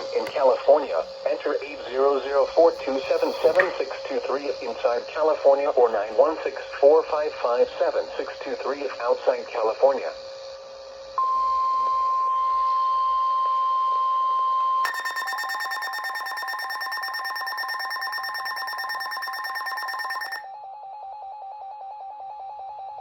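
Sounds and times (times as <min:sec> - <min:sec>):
weather radio alert tone: 0:03.0 - 0:03.7, 0:14.9 - 0:20.4
shrill electronic alarm beeping: 0:03.1 - 0:03.7, 0:14.8 - 0:20.6
lower pulsing beep: 0:11.2 - 0:13.9, 0:14.8 - 0:20.5.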